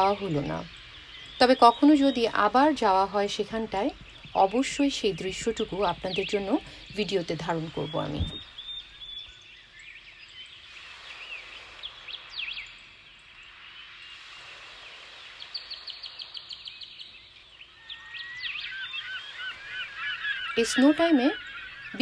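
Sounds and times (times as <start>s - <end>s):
faint outdoor hiss: 0.0s - 22.0s
small birds chirping: 0.0s - 22.0s
high bird trill: 17.6s - 22.0s.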